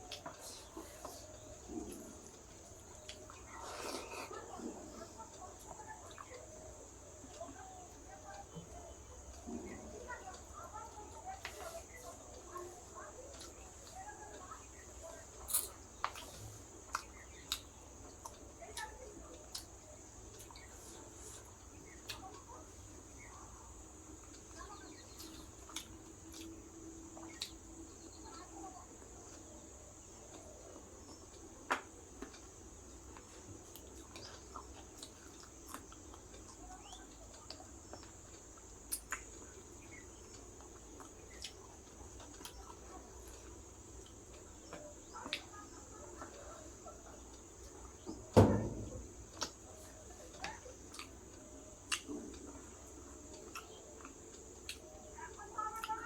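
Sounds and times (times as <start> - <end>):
chewing and lip smacks: 15.0 - 19.8, 30.3 - 45.5, 49.4 - 51.2, 51.8 - 56.0.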